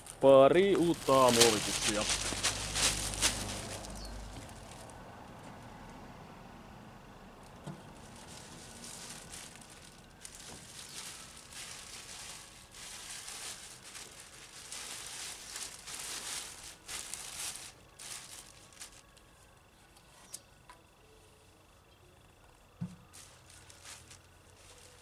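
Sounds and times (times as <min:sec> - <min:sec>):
plastic bags rustling: 0:00.0 - 0:04.9, 0:07.8 - 0:19.2, 0:23.1 - 0:25.0.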